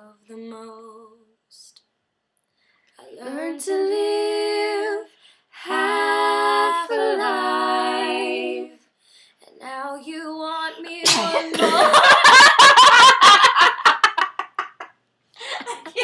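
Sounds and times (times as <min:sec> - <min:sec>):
woman singing: 0:00.0 - 0:01.8, 0:03.0 - 0:08.8, 0:09.5 - 0:11.7
woman sneezing: 0:11.0 - 0:11.6
woman laughing: 0:11.2 - 0:16.0.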